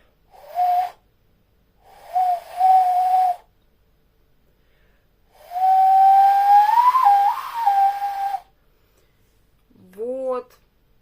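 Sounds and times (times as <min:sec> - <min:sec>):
hand whistle: 0:00.4 - 0:01.0, 0:01.8 - 0:03.5, 0:05.4 - 0:08.5.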